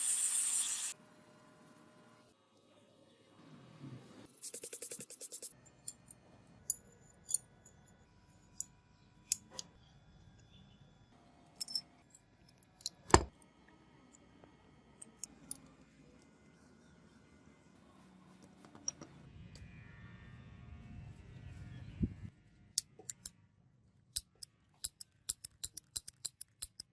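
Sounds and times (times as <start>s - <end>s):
revolver parts clicking: 24.2s - 26.9s.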